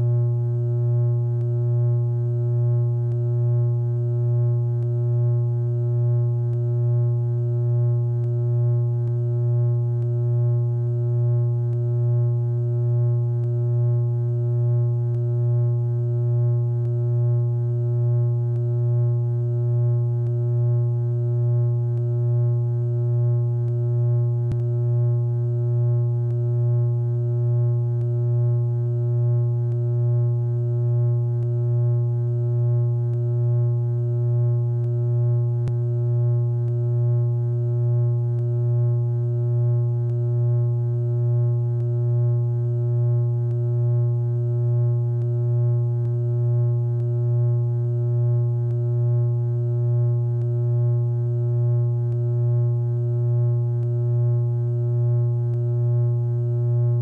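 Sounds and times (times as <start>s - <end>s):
power line hum: 0.0s - 57.0s
faint clicks: 24.5s - 24.7s.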